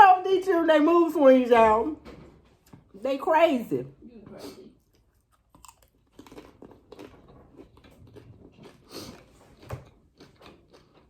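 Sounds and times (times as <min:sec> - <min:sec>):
person crunching food: 0:04.8 - 0:11.0.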